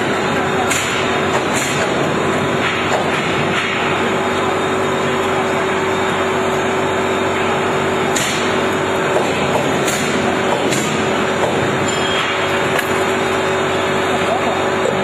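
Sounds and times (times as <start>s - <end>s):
workshop machinery running: 0.0s - 15.0s.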